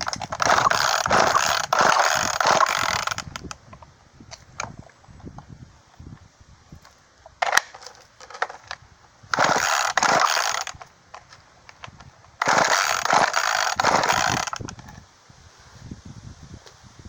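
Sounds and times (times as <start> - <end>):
chainsaw starter cord whirring: 0.0 - 4.8, 7.4 - 15.0.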